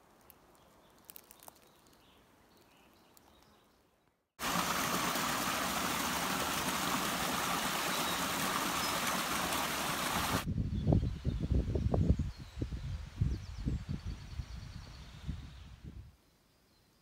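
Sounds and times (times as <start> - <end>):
flowing stream rushing: 4.4 - 10.4.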